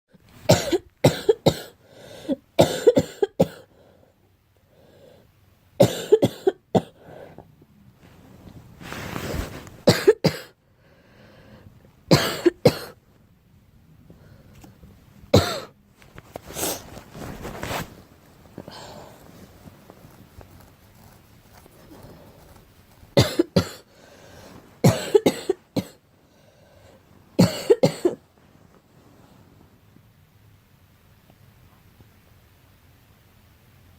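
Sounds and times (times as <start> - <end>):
girl coughing: 0.5 - 1.8, 2.6 - 3.7, 5.8 - 7.0, 9.8 - 10.6, 12.1 - 13.0, 15.3 - 15.8, 23.2 - 23.9, 24.8 - 26.0, 27.4 - 28.2.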